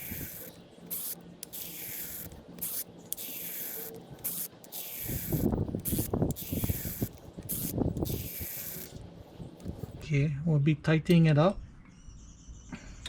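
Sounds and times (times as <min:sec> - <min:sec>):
brake flusher pump hissing: 0:00.0 - 0:09.0.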